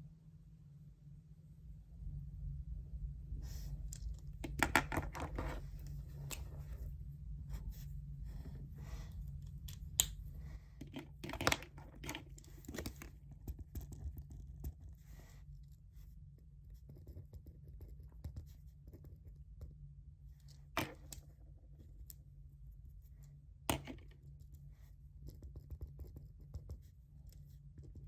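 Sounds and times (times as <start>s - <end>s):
steady low hum: 0.0s - 28.0s
pen scratching: 4.5s - 6.8s.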